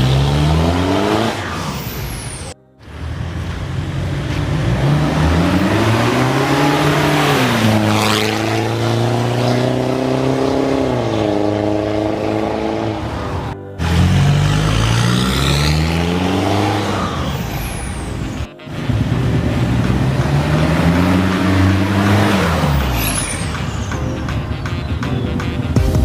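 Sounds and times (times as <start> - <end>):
car engine exhaust note: 2.9 - 24.1.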